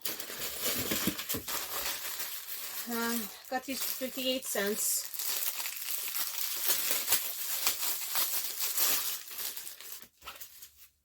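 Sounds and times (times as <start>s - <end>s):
packaging crinkling: 0.0s - 11.0s.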